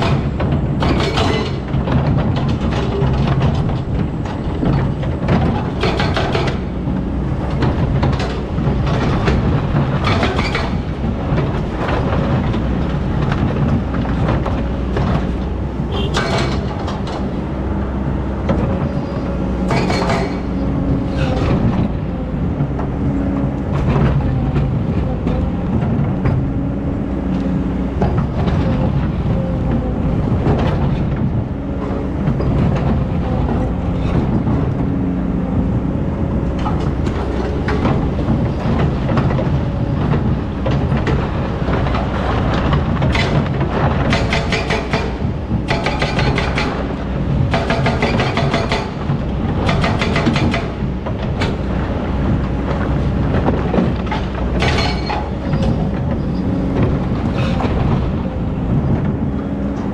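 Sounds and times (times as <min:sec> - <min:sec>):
excavator diesel engine running: 0:00.0 - 0:59.9
metallic clanks and scrapes: 0:16.0 - 0:17.3.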